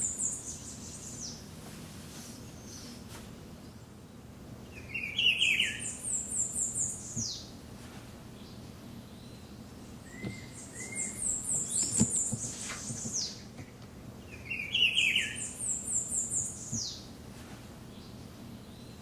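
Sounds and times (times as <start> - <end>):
songbird singing high phrases: 0.0 - 1.5, 4.6 - 7.5, 8.4 - 13.5, 14.2 - 17.1
lower whistled bird notes: 10.0 - 13.4, 14.3 - 17.0.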